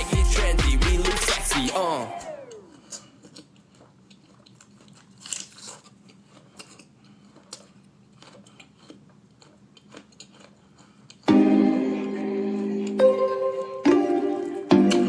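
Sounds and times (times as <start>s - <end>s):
person chewing crunchy apple: 0.0s - 11.3s.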